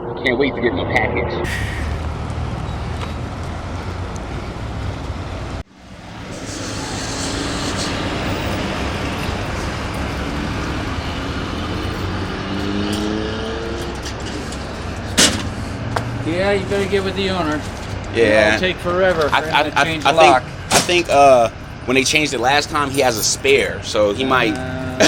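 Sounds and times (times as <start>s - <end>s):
vehicle engine speeding up: 0.0s - 15.0s
road traffic noise: 0.0s - 25.0s.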